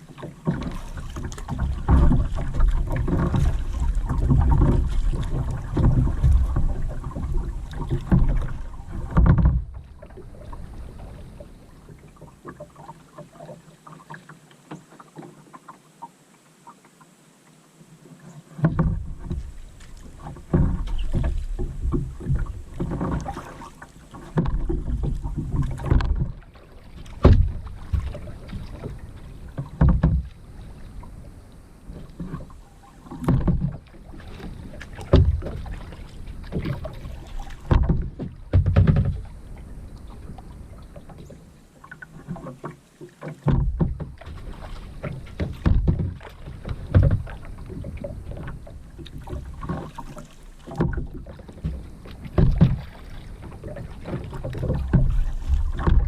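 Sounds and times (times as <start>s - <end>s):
paddle splashing in water: 0.0s - 56.0s.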